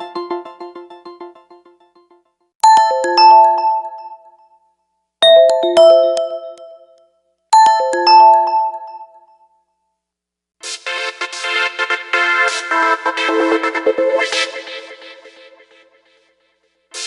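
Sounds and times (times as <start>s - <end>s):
bell-like system chime: 5.2s - 7.0s.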